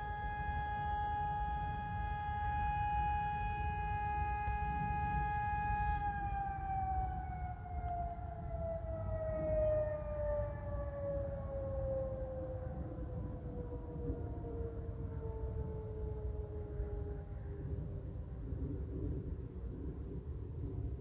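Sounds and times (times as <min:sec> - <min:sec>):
siren winding down: 0:00.0 - 0:12.6.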